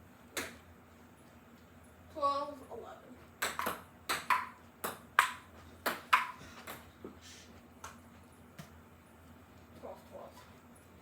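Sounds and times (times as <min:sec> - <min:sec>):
ball bouncing on table: 0:03.4 - 0:06.8.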